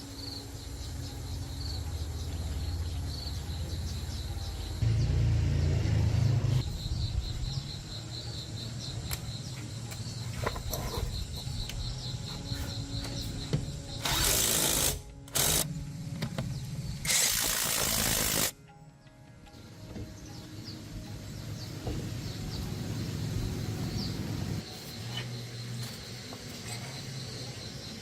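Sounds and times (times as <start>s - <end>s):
insects chirping: 0.0s - 28.0s
loud hissing bursts: 17.0s - 18.5s.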